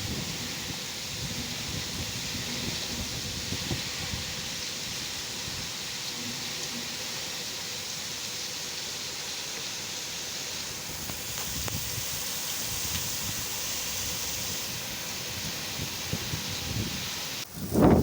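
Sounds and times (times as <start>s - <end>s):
wind buffeting microphone: 0.0s - 5.7s, 10.9s - 18.0s
heavy rain falling: 0.0s - 18.0s.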